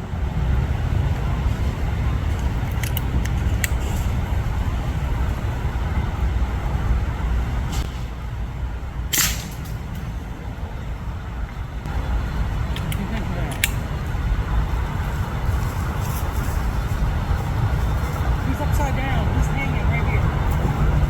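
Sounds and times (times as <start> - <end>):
low rumble: 0.0 - 21.0
air rifle shot: 9.1 - 9.6.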